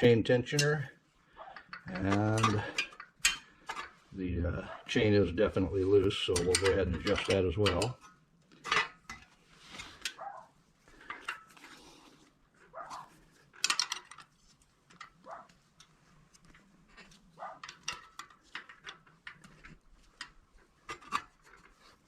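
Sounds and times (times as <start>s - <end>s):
wrench clinking on metal: 1.6s - 3.9s, 6.0s - 9.3s, 13.5s - 14.3s.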